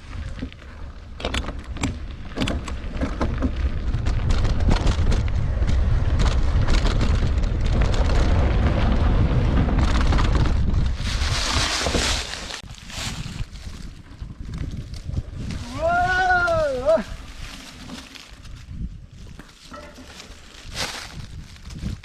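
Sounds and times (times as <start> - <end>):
bike tyres rattling on rough ground: 0.0 - 22.0
wind buffeting microphone: 0.0 - 22.0.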